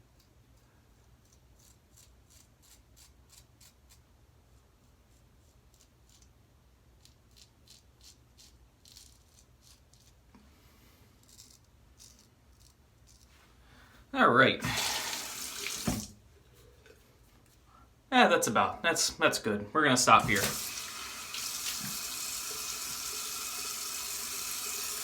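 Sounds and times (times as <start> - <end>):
razor scraping stubble: 1.2 - 4.0, 7.0 - 10.3, 11.1 - 13.4.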